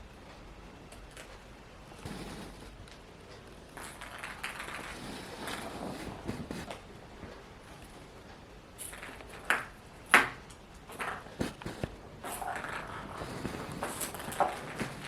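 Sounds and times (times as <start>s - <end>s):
ball scuffling and rolling: 3.7s - 7.4s, 10.9s - 15.0s.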